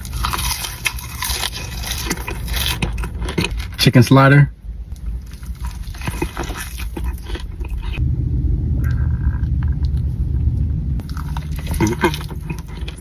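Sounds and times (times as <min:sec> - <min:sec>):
crunchy biting and chewing: 0:00.0 - 0:03.8, 0:05.0 - 0:08.0, 0:11.0 - 0:13.0
low rumble: 0:04.5 - 0:13.0.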